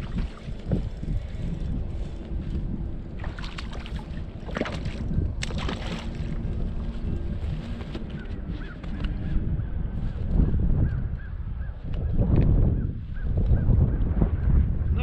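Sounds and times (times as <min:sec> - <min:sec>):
water splashes: 0:00.0 - 0:00.8, 0:03.1 - 0:06.5
water slapping boat hull: 0:00.0 - 0:01.4, 0:02.3 - 0:09.1
low steady hum: 0:00.0 - 0:11.6
wind buffeting microphone: 0:00.0 - 0:15.0.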